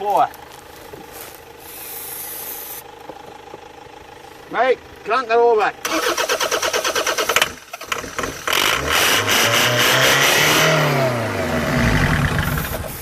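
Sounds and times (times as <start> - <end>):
engine cranking on starter: 5.8 - 10.8, 11.5 - 13.0
engine revving: 5.8 - 13.0.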